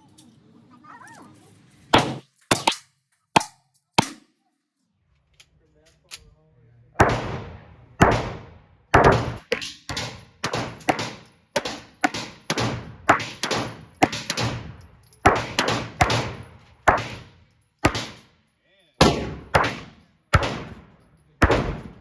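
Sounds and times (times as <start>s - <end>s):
handgun shots echoing: 7.0s - 18.3s, 19.0s - 22.0s.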